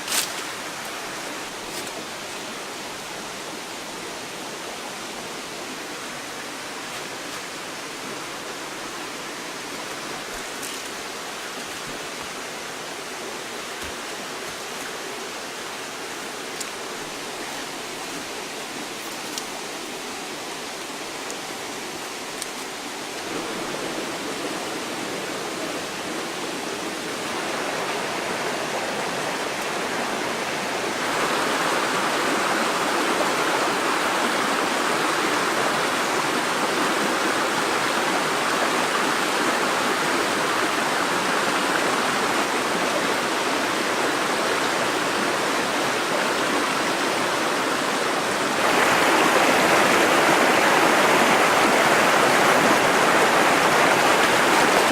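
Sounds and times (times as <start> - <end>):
river water rushing: 0.0 - 54.9.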